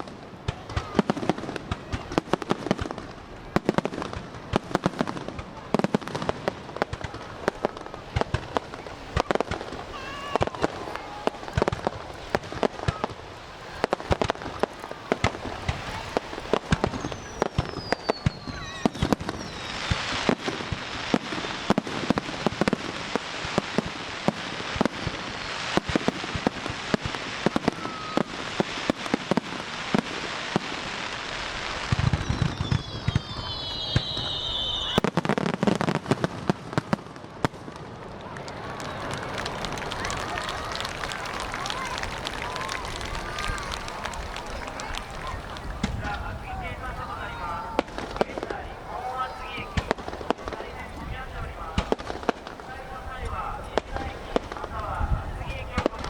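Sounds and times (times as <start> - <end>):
dense fireworks crackling: 0.0 - 56.0
fireworks bursting with sharp bangs: 0.0 - 56.0
falling firework whistle: 12.4 - 22.6, 27.0 - 35.9.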